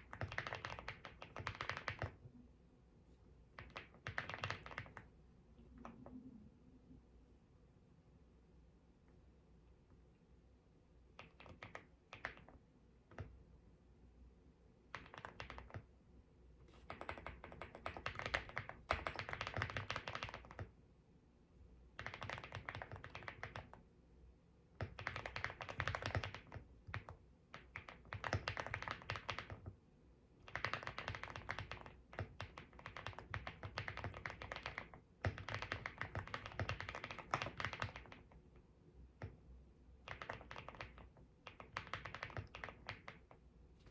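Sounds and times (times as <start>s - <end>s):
mechanical keyboard typing: 0.0s - 2.2s, 3.5s - 5.1s, 11.2s - 13.3s, 14.9s - 15.9s, 16.8s - 20.7s, 22.0s - 23.8s, 24.8s - 29.7s, 30.4s - 38.4s, 40.0s - 43.4s.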